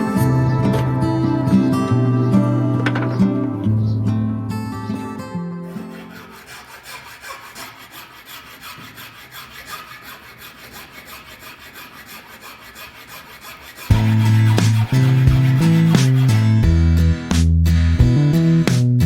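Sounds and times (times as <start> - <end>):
guitar music: 0.0 - 6.0, 13.9 - 19.0
sandpaper rubbing wood: 5.8 - 16.8.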